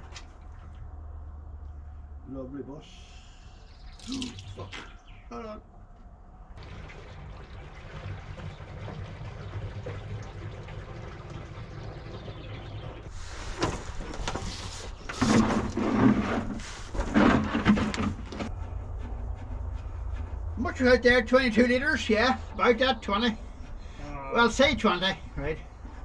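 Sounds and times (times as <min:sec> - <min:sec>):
oil pouring into container: 0:06.6 - 0:12.8.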